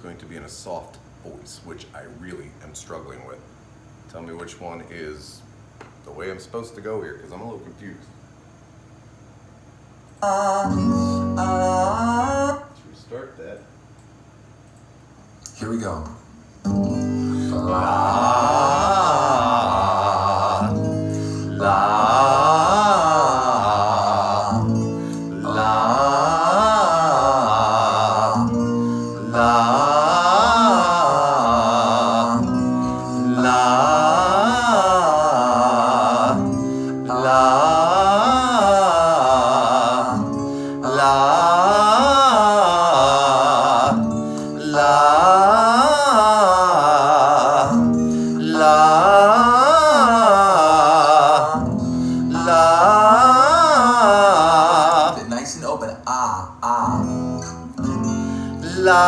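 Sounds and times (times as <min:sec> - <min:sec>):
person singing with vibrato: 0:10.2 - 0:12.9, 0:16.6 - 0:55.4, 0:56.1 - 0:59.0.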